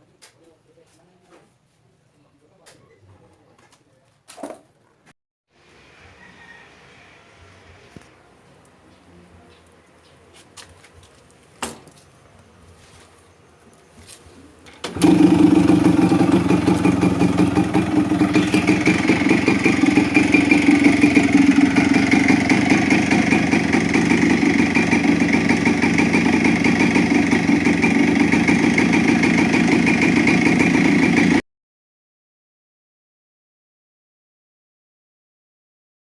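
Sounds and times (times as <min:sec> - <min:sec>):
two-stroke engine idling: 0:14.8 - 0:31.4.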